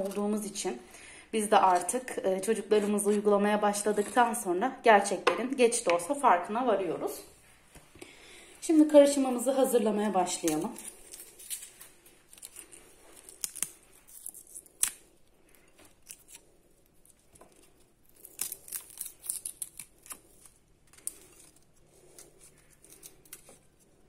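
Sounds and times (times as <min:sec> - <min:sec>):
garlic skins crackling and tearing: 0:00.0 - 0:00.6, 0:08.7 - 0:24.0.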